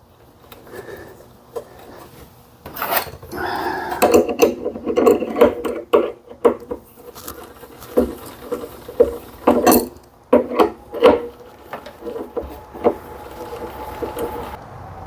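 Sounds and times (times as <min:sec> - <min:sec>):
metal-on-metal scraping: 0:01.6 - 0:14.6
recoil starter clicking: 0:04.0 - 0:14.6.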